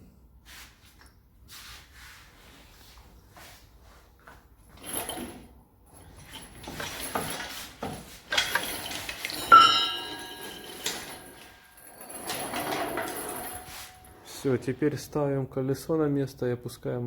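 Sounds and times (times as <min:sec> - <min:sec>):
metal tools clanking: 0:06.0 - 0:14.6
ringing metal strike: 0:09.5 - 0:10.8.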